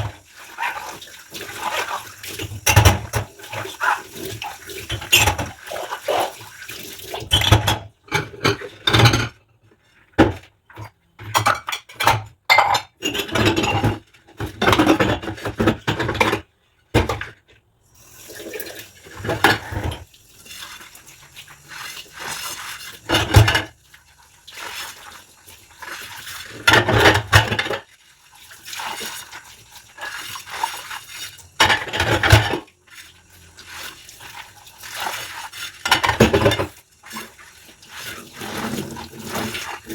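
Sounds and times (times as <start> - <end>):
water splashing and running: 0.0 - 7.6, 18.0 - 39.9
dishes and cutlery clinking: 11.3 - 16.4.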